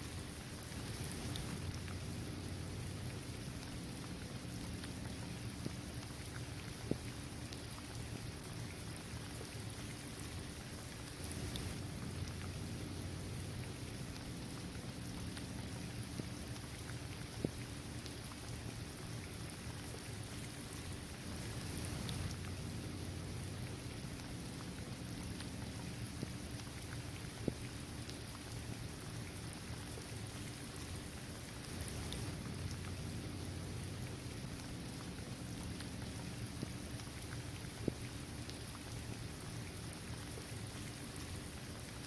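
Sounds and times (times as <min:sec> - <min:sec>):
steady rain patter: 0:00.0 - 0:42.0.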